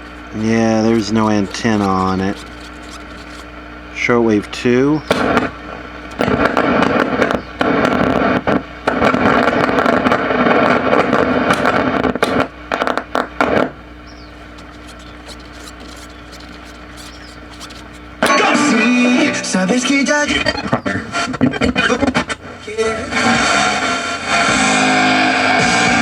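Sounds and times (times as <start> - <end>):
static crackles and clicks: 0.0 - 18.5
radio static hiss: 0.0 - 18.6.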